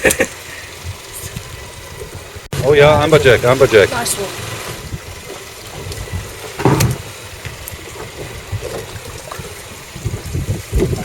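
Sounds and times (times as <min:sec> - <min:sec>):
water sloshing around boat: 0:00.8 - 0:11.0
sharp splash or knock: 0:06.6 - 0:07.1.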